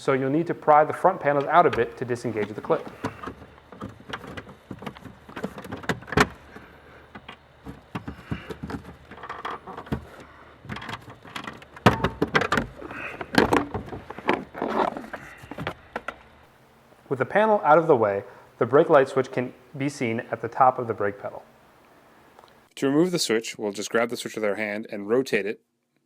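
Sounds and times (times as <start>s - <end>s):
plastic trim panel clicking and rattling: 1.4s - 6.5s.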